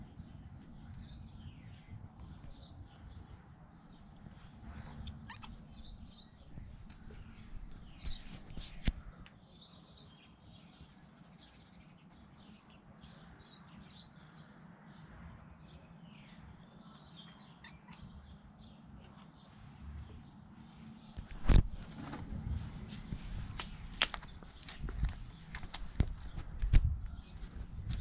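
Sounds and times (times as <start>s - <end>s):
low steady background rumble: 0.0s - 8.0s, 15.5s - 28.0s
birds chirping faintly: 0.0s - 28.0s.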